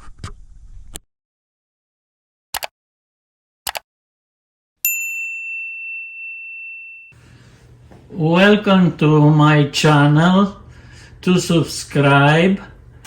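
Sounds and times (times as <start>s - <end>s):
bright bell ding: 4.8s - 7.2s.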